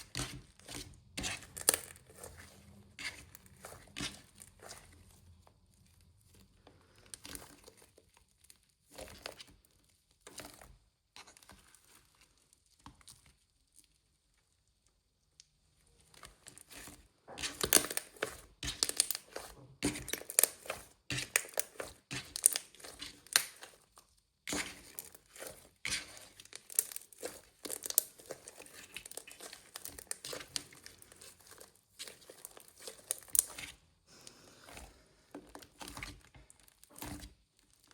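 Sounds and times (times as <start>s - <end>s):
slime crackling and popping: 17.4s - 33.8s.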